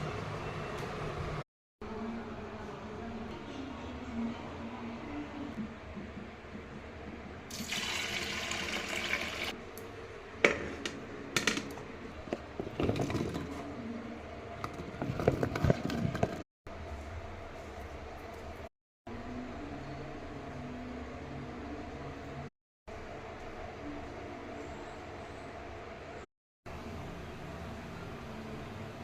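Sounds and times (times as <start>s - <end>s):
liquid pouring: 7.5s - 9.6s.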